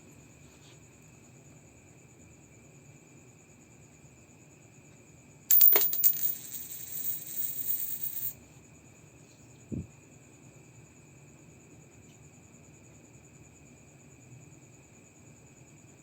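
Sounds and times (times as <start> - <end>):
coin bouncing and ringing: 5.5 - 8.4.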